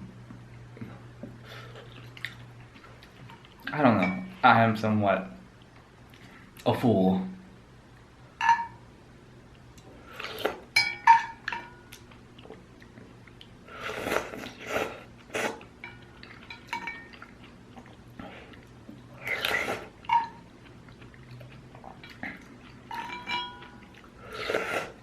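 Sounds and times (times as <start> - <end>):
person chewing: 1.6 - 3.7, 11.9 - 25.0
utensils clinking against bowl: 10.8 - 11.9, 15.8 - 17.2, 22.9 - 23.8
person slurping noodles: 13.7 - 15.6, 19.2 - 20.0, 24.2 - 25.0.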